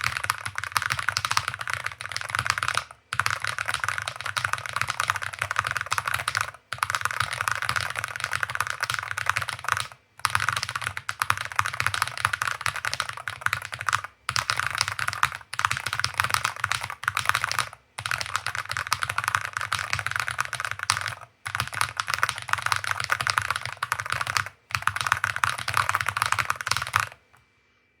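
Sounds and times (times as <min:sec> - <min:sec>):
fast keyboard typing clatter: 0:00.0 - 0:27.2.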